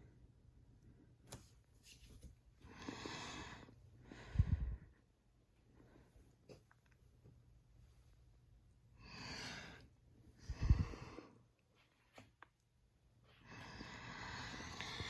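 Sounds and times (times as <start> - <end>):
person breathing out heavily: 2.7 - 4.9, 9.0 - 11.4, 13.4 - 15.0.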